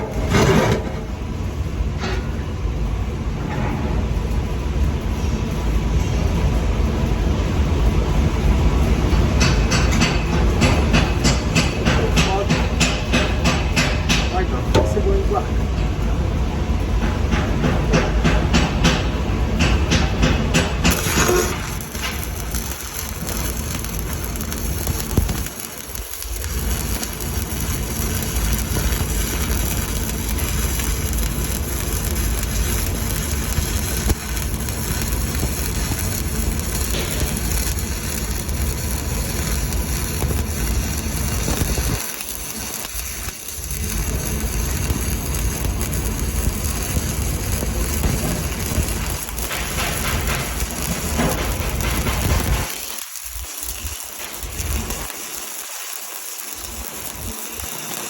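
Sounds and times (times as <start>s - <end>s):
welding arc crackling: 17.8s - 58.0s.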